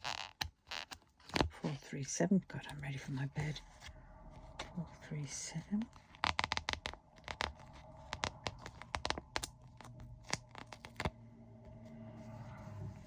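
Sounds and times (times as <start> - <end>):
plastic packets crinkling: 5.9 - 11.1.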